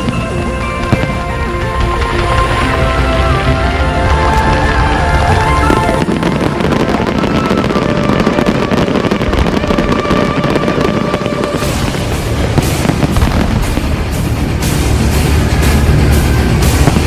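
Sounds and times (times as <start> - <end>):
fireworks crackling pops: 0.0 - 14.9, 15.7 - 17.0
loud fireworks bangs: 4.4 - 17.0.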